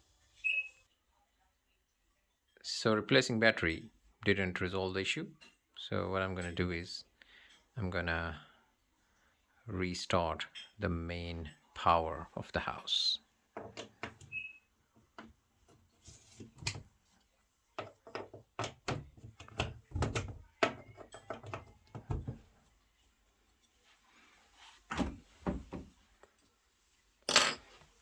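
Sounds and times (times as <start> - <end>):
things being handled: 12.6 - 22.6.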